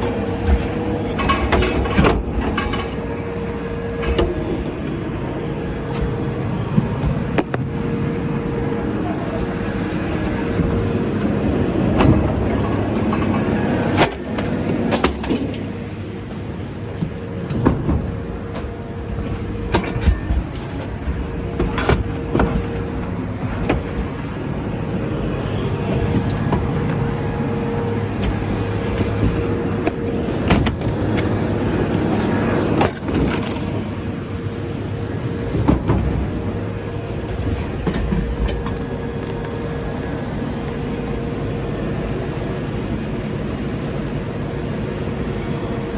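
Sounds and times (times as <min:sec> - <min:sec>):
scrap metal clanking: 0:00.0 - 0:33.9
engine whining: 0:00.0 - 0:45.9.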